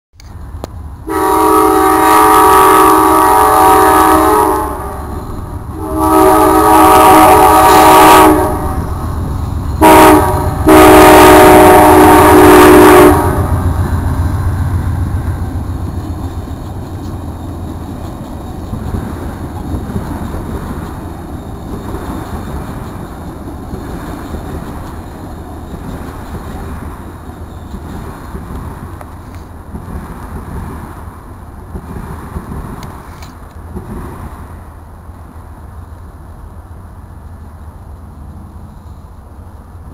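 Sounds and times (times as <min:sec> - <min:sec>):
train rumbling past: 0:00.2 - 0:39.9
locomotive air horn blasts: 0:01.0 - 0:09.0, 0:09.8 - 0:13.8
wheels clicking over rails: 0:15.4 - 0:30.8.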